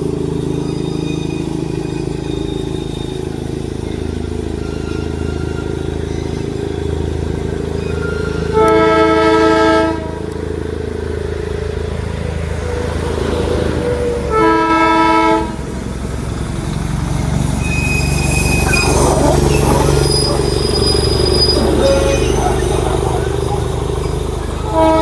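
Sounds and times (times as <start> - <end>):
toy train horn blasts: 8.5 - 10.3, 14.3 - 15.6, 18.5 - 25.0
low running rumble: 9.0 - 25.0.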